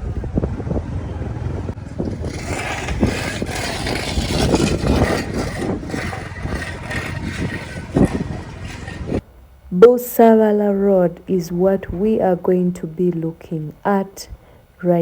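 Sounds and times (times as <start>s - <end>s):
vehicle engine rumbling: 0.0s - 9.7s.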